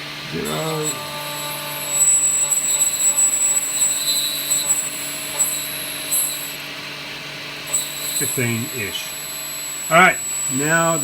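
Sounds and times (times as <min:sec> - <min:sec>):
metal lathe whining: 0:00.0 - 0:11.0
cutting tool scraping: 0:00.3 - 0:06.7, 0:07.6 - 0:11.0.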